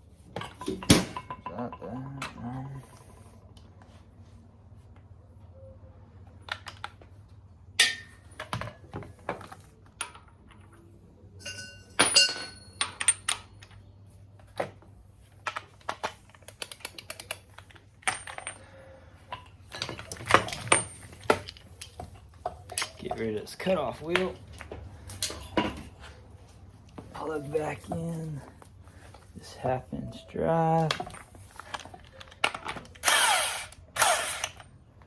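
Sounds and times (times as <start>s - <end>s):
metal tools clicking and knocking: 0.4s - 3.1s, 7.8s - 8.8s, 11.4s - 13.8s, 15.4s - 24.4s.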